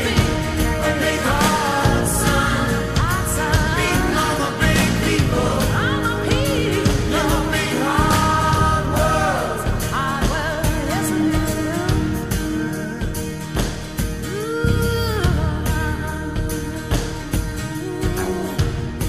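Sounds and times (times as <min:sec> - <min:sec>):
rock song with singing: 0:00.0 - 0:19.0.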